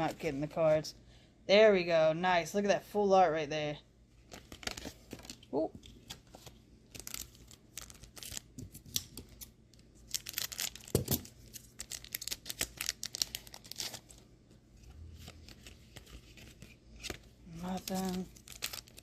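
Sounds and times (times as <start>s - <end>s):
foil wrappers crinkling: 4.3s - 14.2s, 15.3s - 19.0s.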